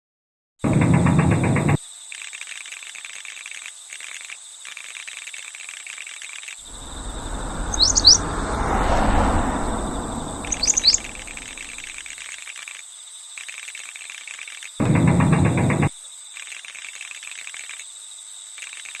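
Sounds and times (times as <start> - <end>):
bird chirps: 6.7 - 11.9
insects buzzing: 6.7 - 12.0
rushing noise with low rumble: 6.7 - 12.0.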